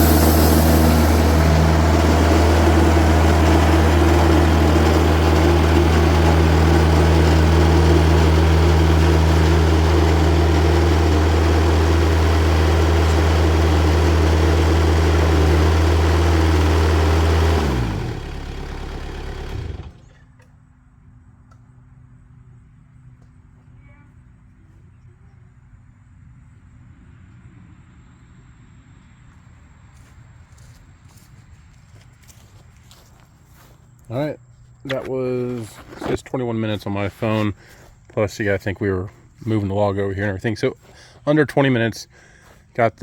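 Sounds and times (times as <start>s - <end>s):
sawmill engine running: 0.0s - 20.2s, 35.0s - 43.0s.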